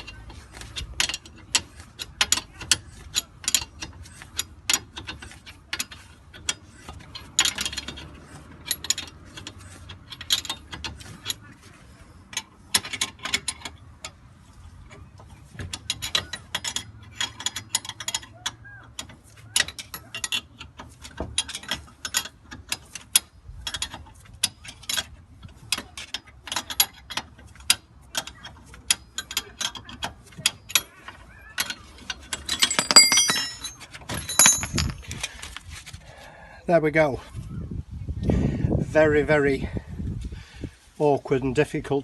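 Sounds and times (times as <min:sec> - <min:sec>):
metallic clatter and ringing: 0:32.4 - 0:35.2.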